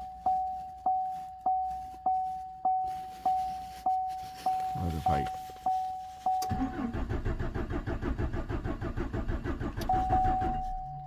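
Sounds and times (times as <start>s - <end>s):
engine starter cranking: 6.4s - 11.0s.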